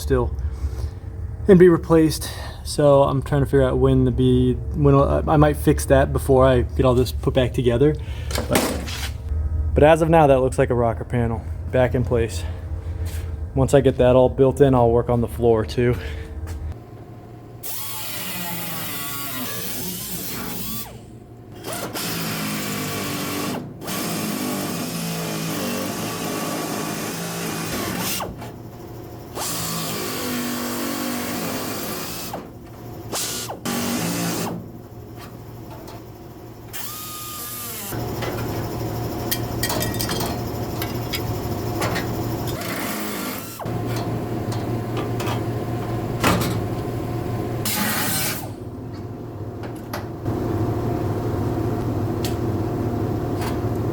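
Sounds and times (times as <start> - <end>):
power tools working sheet metal: 17.6 - 28.3, 29.3 - 32.4, 36.7 - 38.4, 42.5 - 43.8.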